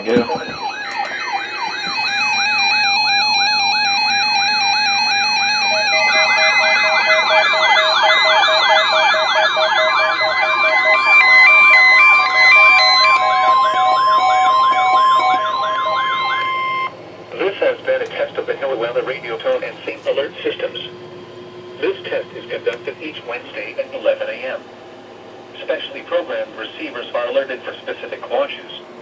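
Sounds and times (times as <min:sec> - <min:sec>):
beeping tones: 0:00.0 - 0:16.9
siren-like alarm sweep: 0:00.0 - 0:17.0
steady alarm tone: 0:00.0 - 0:26.3.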